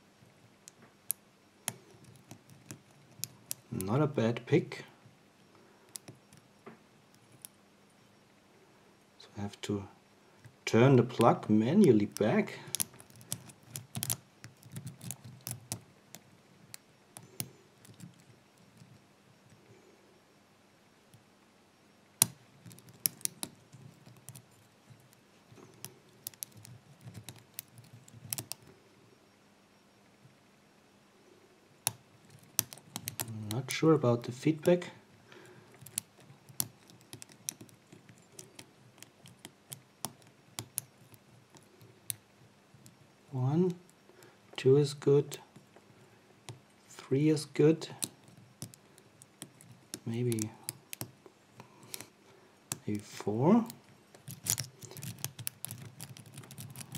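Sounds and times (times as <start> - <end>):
padlock pins clicking: 0.6 - 4.1, 5.9 - 6.5, 7.1 - 7.6, 10.4 - 19.6, 22.2 - 28.8, 31.8 - 44.0, 47.8 - 52.1, 52.7 - 56.9.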